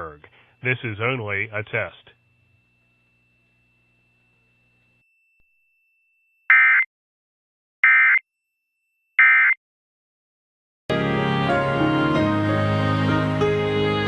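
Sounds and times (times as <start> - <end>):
digital data tone bursts: 6.5 - 6.9, 7.8 - 8.2, 9.2 - 9.6.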